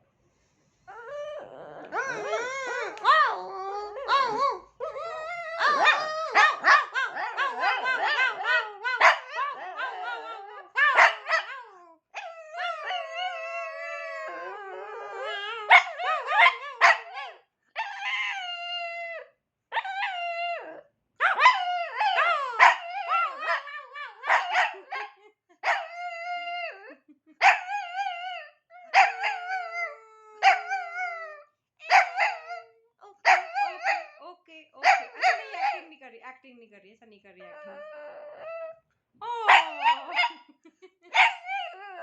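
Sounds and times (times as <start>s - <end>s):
small dog barking and howling: 0.9s - 34.2s, 34.8s - 35.8s, 37.6s - 40.4s, 41.1s - 42.0s
person imitating barks and howls: 1.9s - 11.8s, 34.8s - 35.8s, 39.2s - 40.3s.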